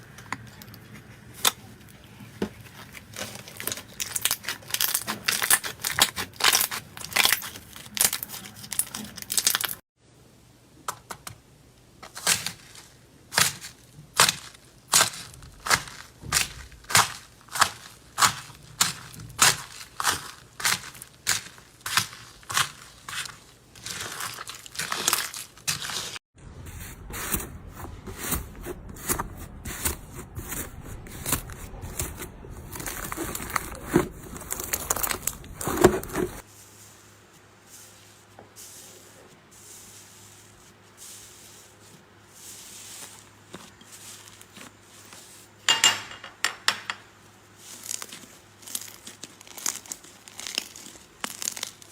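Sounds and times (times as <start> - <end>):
slime crackling and crunching: 2.6 - 9.8, 12.1 - 26.2, 29.7 - 36.5, 47.5 - 51.9
soft slime handling: 29.1 - 45.6.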